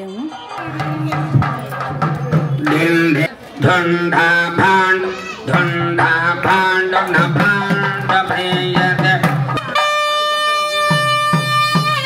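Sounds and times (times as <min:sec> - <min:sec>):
melody over a beat: 0:05.6 - 0:12.0.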